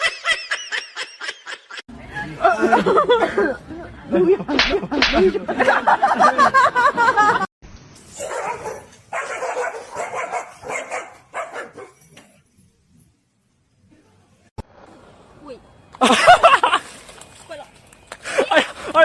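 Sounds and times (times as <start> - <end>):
dog barking and yipping: 8.2 - 12.1.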